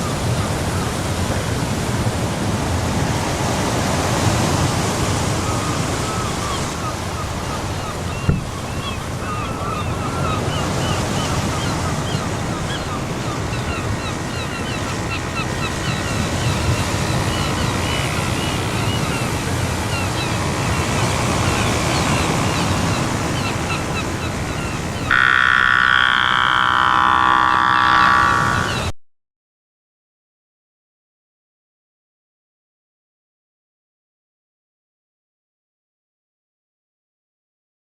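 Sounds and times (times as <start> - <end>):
water: 0.0 - 28.9.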